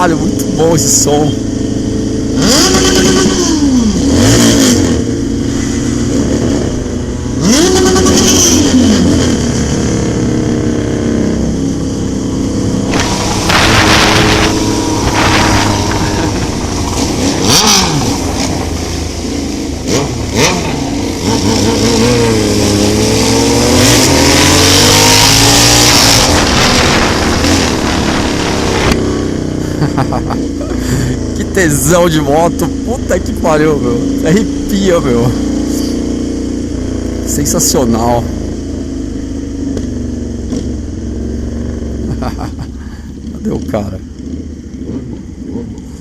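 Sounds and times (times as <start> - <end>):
motorcycle engine revving: 0.0 - 46.0
road and wind noise: 0.0 - 46.0
wind rushing over microphone: 11.5 - 20.4, 21.1 - 29.4.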